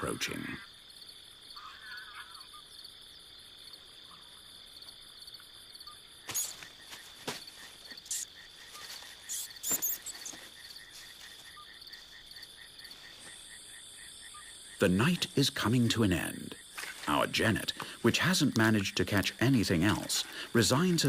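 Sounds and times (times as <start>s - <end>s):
crickets chirping: 0.0s - 21.0s
rustling crackles: 6.2s - 13.8s, 16.6s - 18.7s.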